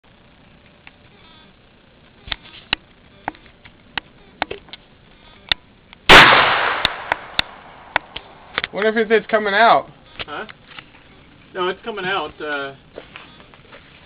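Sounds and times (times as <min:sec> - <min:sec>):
revolver gunshot: 0:06.1 - 0:08.7.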